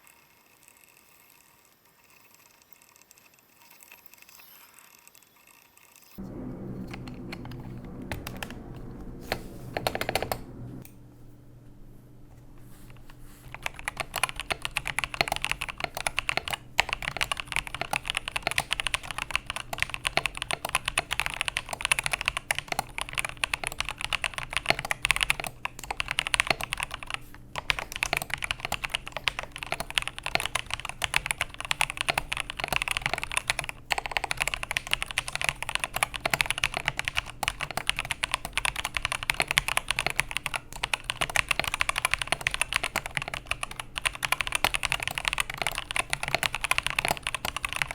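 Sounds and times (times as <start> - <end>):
mechanical keyboard typing: 6.8 - 10.5, 13.4 - 47.9.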